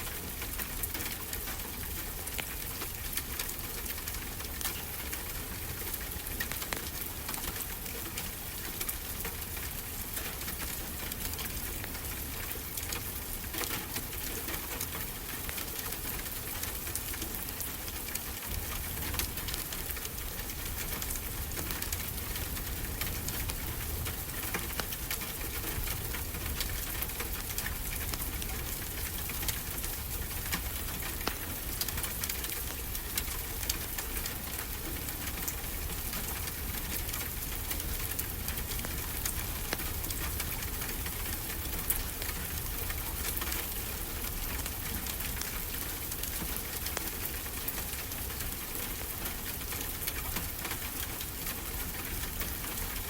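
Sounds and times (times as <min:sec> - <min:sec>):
wood fire crackling: 0:14.1 - 0:51.4.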